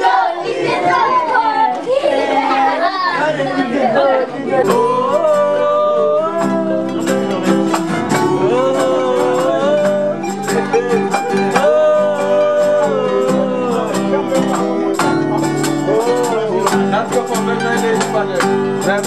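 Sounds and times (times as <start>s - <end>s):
country music with plucked strings: 4.4s - 19.0s.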